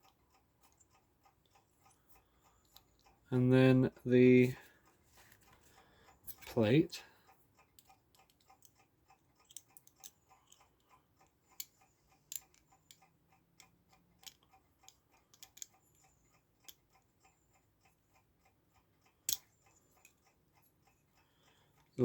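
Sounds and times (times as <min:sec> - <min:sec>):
clock ticking: 0:00.0 - 0:22.0
light clicks of clock parts: 0:00.0 - 0:22.0.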